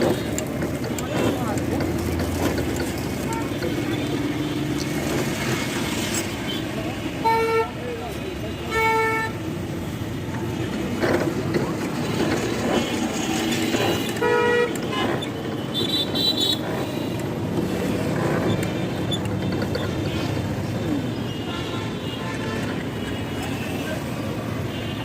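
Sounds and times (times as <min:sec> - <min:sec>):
road traffic noise: 0:00.0 - 0:25.0
vehicle horns honking: 0:06.5 - 0:07.8, 0:13.9 - 0:17.2, 0:21.0 - 0:24.0.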